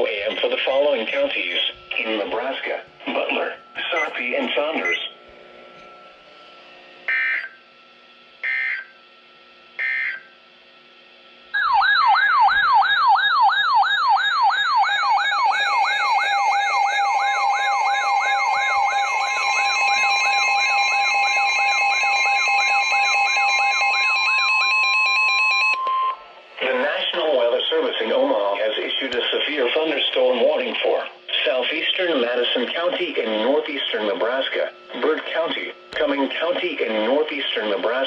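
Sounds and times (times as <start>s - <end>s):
digital data tone bursts: 0.1s - 5.2s
electronic siren sweeping: 7.1s - 7.6s, 9.8s - 10.3s, 11.6s - 26.3s.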